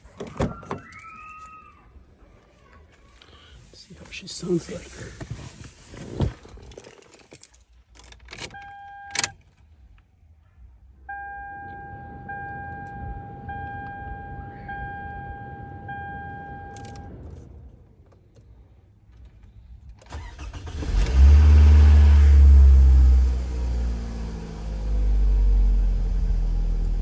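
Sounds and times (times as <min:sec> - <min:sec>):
dashboard warning chime beeping: 0:08.6 - 0:09.3, 0:11.1 - 0:17.2
car engine cranking and starting: 0:11.3 - 0:27.0.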